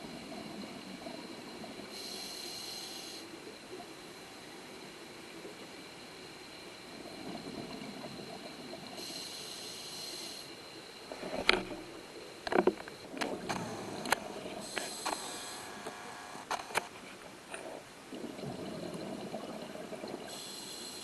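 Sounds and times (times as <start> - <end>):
regulator hissing inhale: 1.9 - 3.4, 9.0 - 10.6, 13.6 - 16.4, 20.3 - 21.0
sharp clicks and knocks: 11.3 - 11.8, 12.4 - 14.2.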